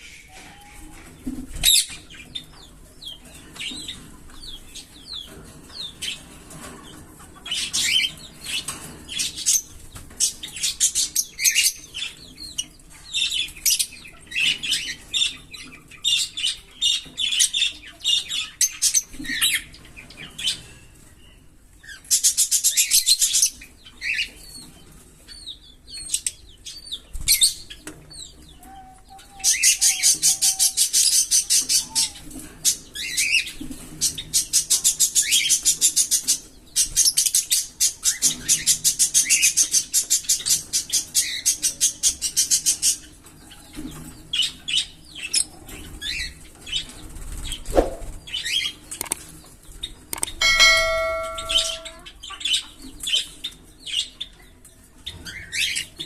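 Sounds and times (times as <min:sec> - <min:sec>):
lovebirds chirping: 0:48.2 - 0:52.7.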